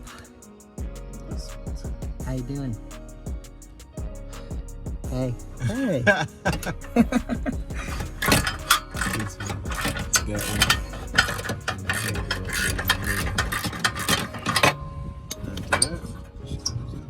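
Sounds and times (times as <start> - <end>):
socket ratchet clicking: 8.0 - 14.7.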